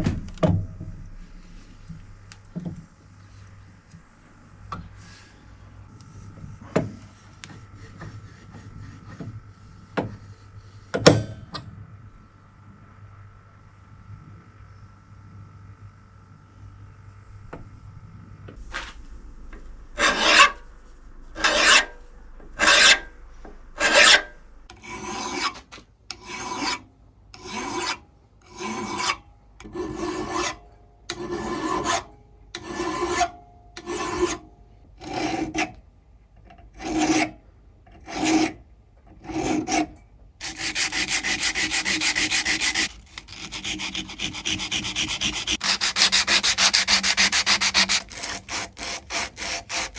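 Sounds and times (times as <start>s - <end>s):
rasping rubbing on metal: 20.0s - 20.7s, 21.3s - 22.0s, 22.6s - 26.8s, 27.4s - 34.4s, 35.0s - 35.7s, 36.8s - 37.3s, 38.0s - 38.6s, 39.2s - 49.9s.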